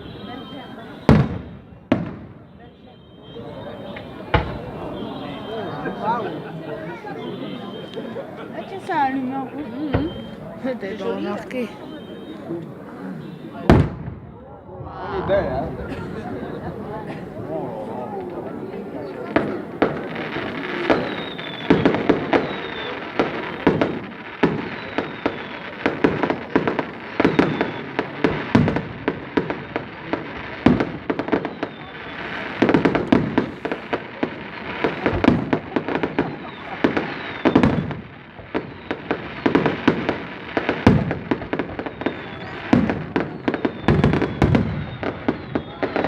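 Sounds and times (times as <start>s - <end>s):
fireworks bangs and crackling: 0.0s - 46.0s
faint falling whistles: 2.6s - 6.5s, 9.8s - 10.5s, 20.8s - 23.7s, 24.6s - 25.7s, 36.1s - 37.8s, 41.8s - 46.0s.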